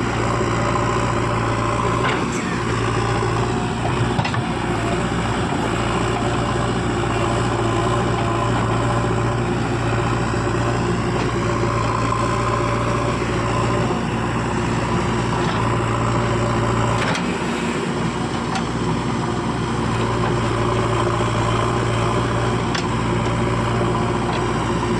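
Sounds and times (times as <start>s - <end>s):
heavy diesel engine running: 0.0s - 24.9s.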